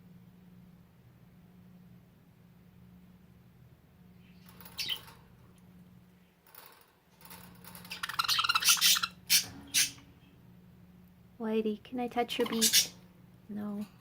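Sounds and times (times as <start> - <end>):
budgerigars chattering and squawking: 4.8 - 5.1, 7.9 - 10.0, 12.4 - 13.0.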